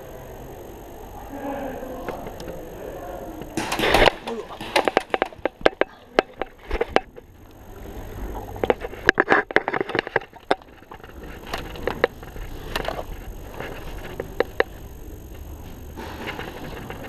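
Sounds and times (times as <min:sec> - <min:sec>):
pellets hitting targets: 0:03.6 - 0:05.8
gas guns firing: 0:03.6 - 0:06.3.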